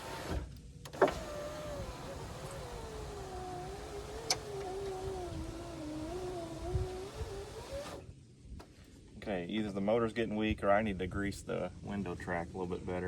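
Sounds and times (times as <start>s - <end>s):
power window motor whine: 0.0s - 8.1s
clicks: 3.7s - 5.0s.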